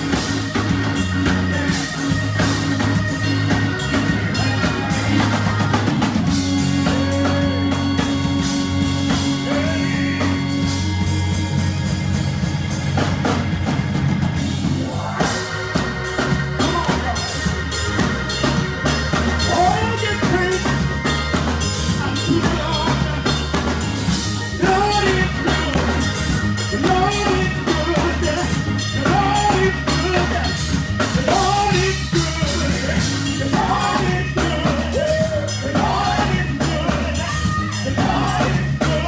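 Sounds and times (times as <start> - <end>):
person singing: 0.0 - 11.3, 19.2 - 39.0
gospel band playing: 0.0 - 39.0.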